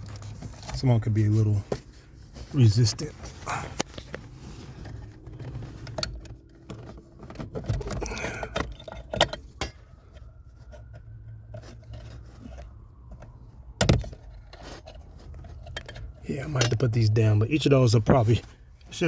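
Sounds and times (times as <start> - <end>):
plastic connectors clicking and scraping: 3.2 - 17.1.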